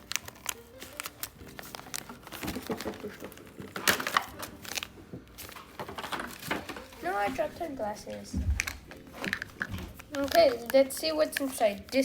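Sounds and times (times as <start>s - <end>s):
plastic packaging crinkling: 0.0s - 12.0s
plastic toy pieces clicking: 8.6s - 12.0s.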